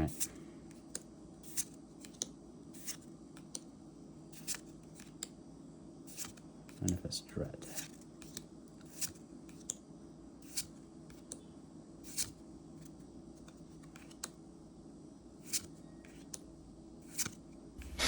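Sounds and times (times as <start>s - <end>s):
faint steady hum: 0.0s - 18.0s
trading cards clicking and snapping: 13.4s - 14.4s.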